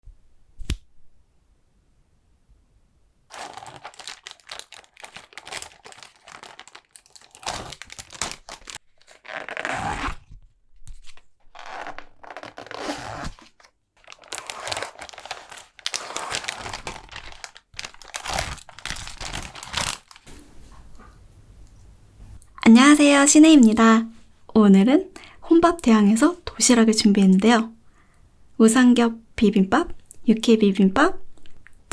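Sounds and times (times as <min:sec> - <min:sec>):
plastic packaging crinkling: 0:03.3 - 0:09.7, 0:11.0 - 0:20.3
plastic tearing: 0:03.3 - 0:20.3.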